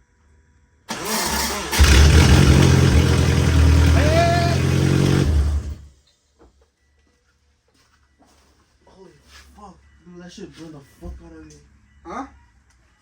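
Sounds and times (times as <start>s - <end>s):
car engine running: 0.9s - 5.9s
engine cranking on starter: 0.9s - 5.9s.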